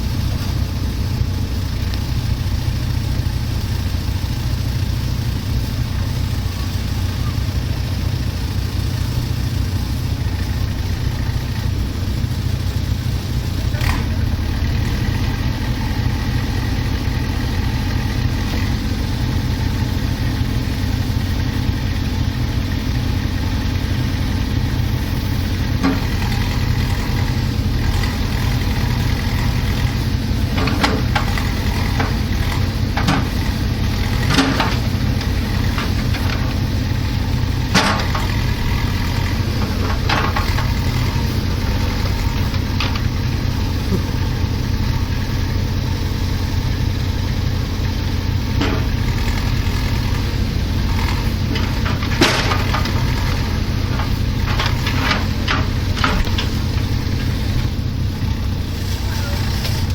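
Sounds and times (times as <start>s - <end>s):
heavy machine engine running: 0.0s - 59.9s
short knocks or clanks: 37.6s - 41.2s.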